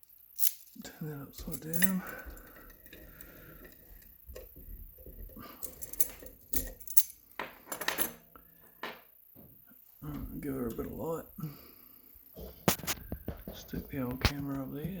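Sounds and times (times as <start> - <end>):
metal lock clicking and clinking: 1.4 - 3.8, 5.6 - 8.2.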